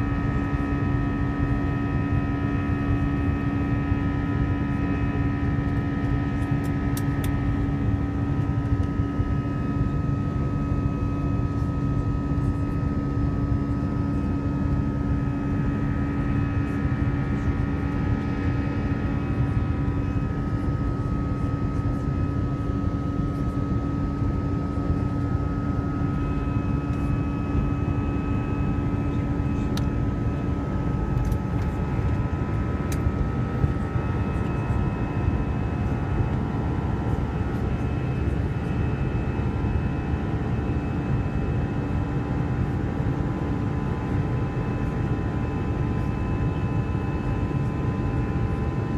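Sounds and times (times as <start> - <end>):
aircraft cabin jet engine rush: 0.1 - 47.1
low hum: 22.6 - 41.2.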